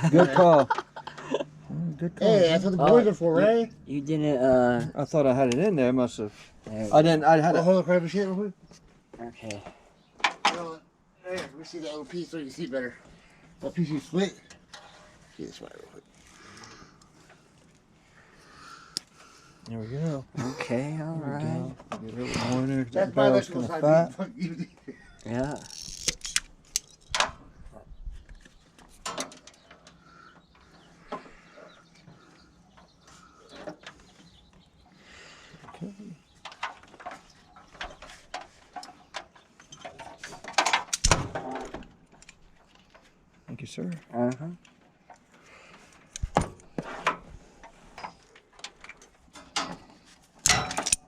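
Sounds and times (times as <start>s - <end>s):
wire rustling: 25.0s - 27.5s
sharp clicks of tools: 25.6s - 27.3s, 50.4s - 51.0s.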